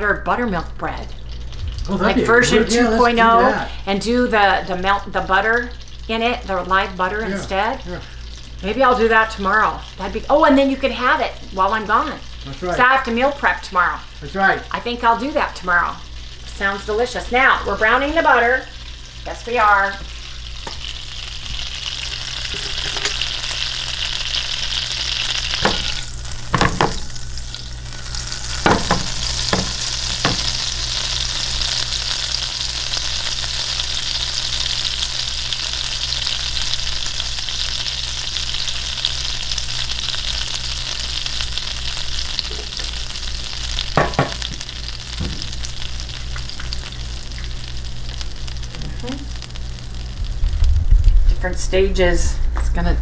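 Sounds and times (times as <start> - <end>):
butter sizzling in a frying pan: 0.0 - 50.7
short knocks: 25.6 - 27.2, 28.6 - 30.6.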